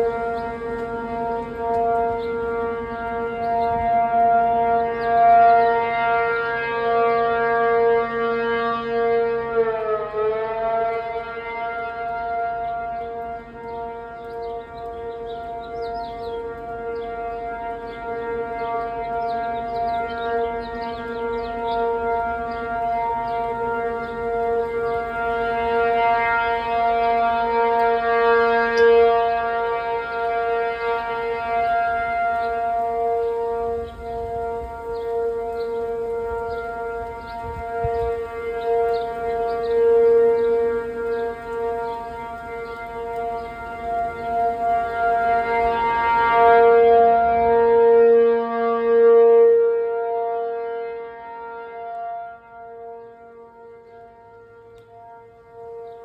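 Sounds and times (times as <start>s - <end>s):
warning siren steady tone: 0.0s - 56.0s.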